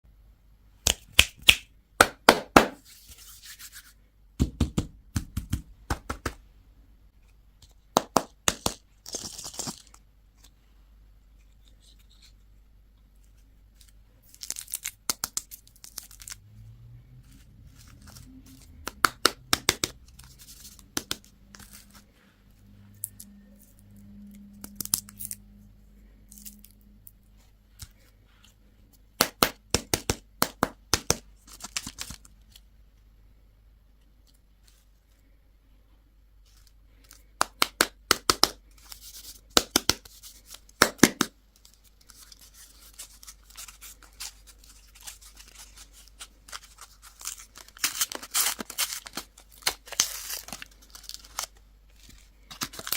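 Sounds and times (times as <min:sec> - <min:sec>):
plastic wrappers crinkling and tearing: 0:13.7 - 0:16.4, 0:41.6 - 0:52.9.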